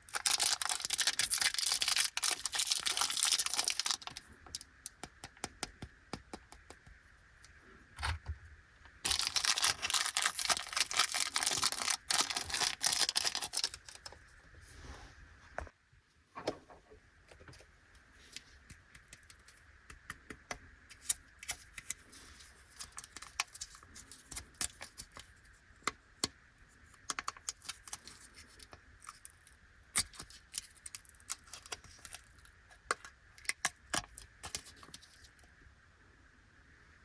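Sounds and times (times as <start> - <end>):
plastic packaging crinkling: 0.0 - 4.6, 9.0 - 14.1.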